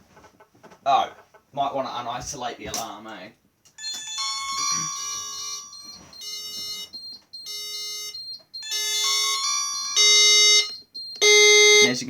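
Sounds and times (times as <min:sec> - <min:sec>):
pulsing multi-tone fire alarm: 0:04.2 - 0:12.0.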